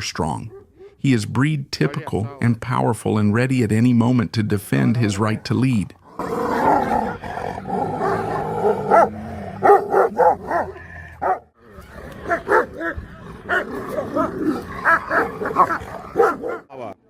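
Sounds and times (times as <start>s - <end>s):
dog barking: 0.5s - 1.0s, 8.0s - 11.5s, 12.2s - 16.7s
dog growling: 5.2s - 16.6s.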